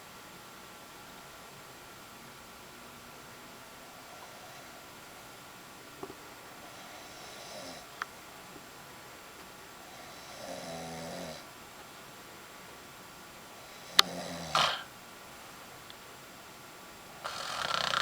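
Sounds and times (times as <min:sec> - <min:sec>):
person snoring: 0:10.0 - 0:11.4, 0:13.8 - 0:14.9, 0:17.2 - 0:18.0.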